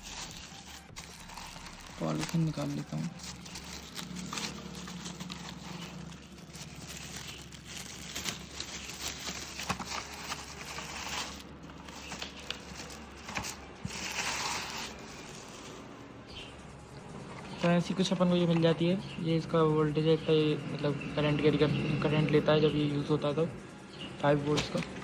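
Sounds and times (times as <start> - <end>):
plastic bag crinkling: 0.0 - 16.5.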